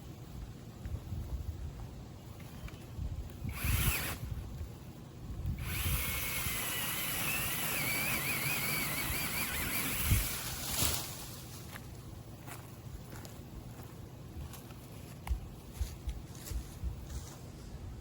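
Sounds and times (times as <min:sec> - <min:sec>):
electric chainsaw motor whining: 0:03.4 - 0:04.4, 0:05.5 - 0:10.8.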